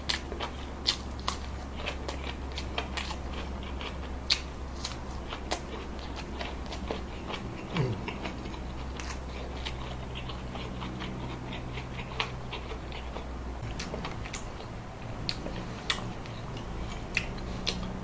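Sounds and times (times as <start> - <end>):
person chewing: 0.0 - 18.0
low hum: 12.2 - 18.0.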